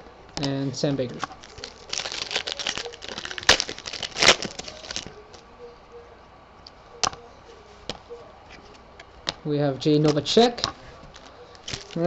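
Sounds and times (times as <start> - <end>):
foil wrapper tearing and crinkling: 1.3 - 5.4, 11.1 - 12.0.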